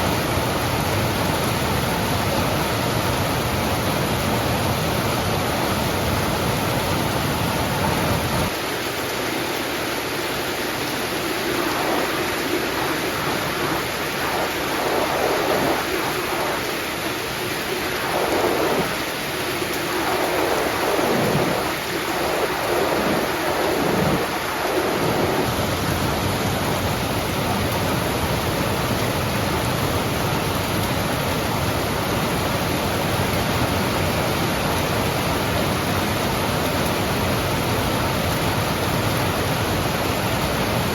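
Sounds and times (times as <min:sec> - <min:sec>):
heavy rain: 0:00.0 - 0:40.9
rolling thunder: 0:19.8 - 0:26.6.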